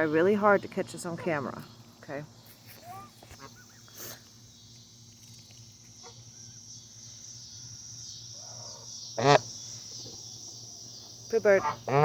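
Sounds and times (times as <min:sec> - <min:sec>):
crickets chirring: 0:00.0 - 0:12.0
goose honking: 0:11.5 - 0:12.0.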